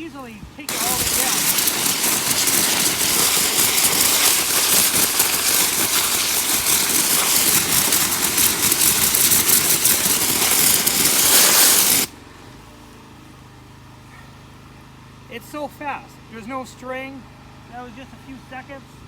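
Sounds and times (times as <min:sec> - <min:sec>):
pressure washer motor: 0:00.7 - 0:12.1
pressure washer water jet hissing: 0:00.7 - 0:12.1.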